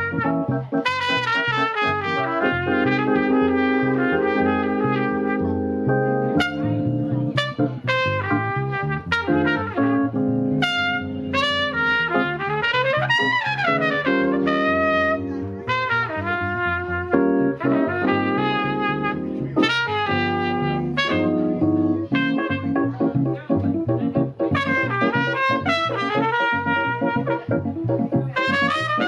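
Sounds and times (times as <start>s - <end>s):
trumpet and horns playing melody: 0.0s - 23.1s, 24.3s - 29.0s
walking bass line: 0.0s - 29.0s.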